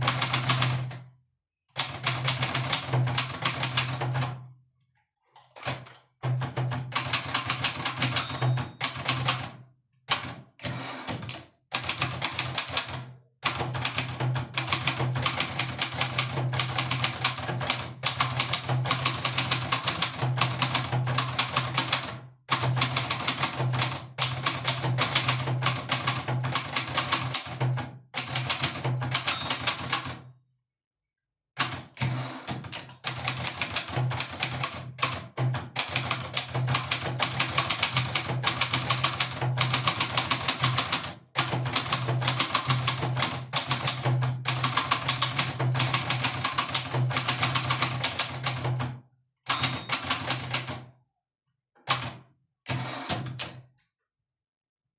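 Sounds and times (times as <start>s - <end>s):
typewriter key strikes: 7.5s - 9.4s, 29.1s - 30.0s, 49.5s - 50.6s
typewriter margin bell ringing: 8.2s - 9.3s, 29.2s - 30.0s, 49.5s - 50.3s.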